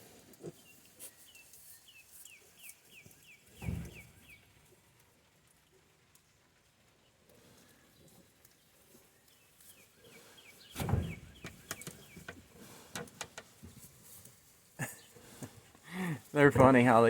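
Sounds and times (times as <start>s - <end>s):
rustling and knocks: 3.5s - 4.2s, 10.7s - 14.4s.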